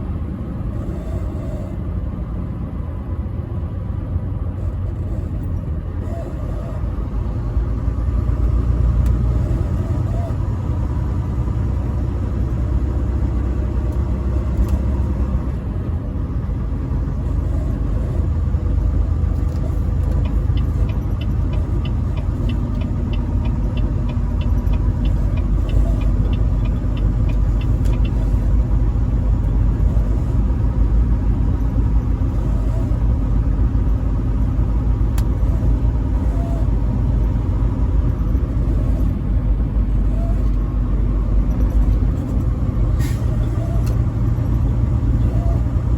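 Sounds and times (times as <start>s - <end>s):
truck engine and road noise: 0.0s - 45.9s
faint regular ticking: 20.0s - 28.2s.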